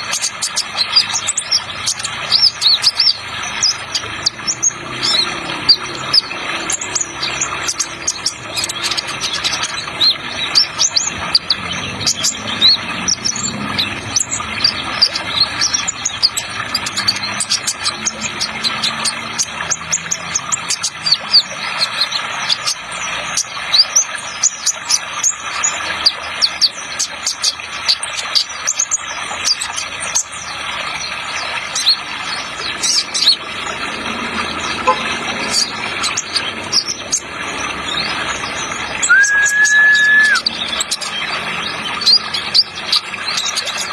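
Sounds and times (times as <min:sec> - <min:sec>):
rushing water: 0:00.0 - 0:43.9
bird chirping rapidly: 0:31.7 - 0:43.9.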